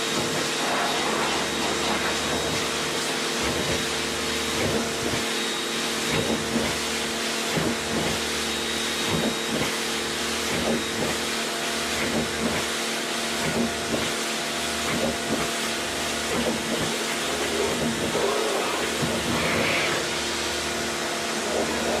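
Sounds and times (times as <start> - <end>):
water jet spraying: 0.0 - 8.4, 13.5 - 22.0
pressure washer motor hum: 0.0 - 22.0.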